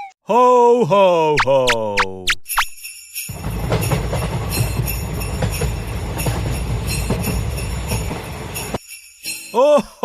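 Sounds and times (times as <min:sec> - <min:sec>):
sleigh bells jingling: 0:02.5 - 0:10.0.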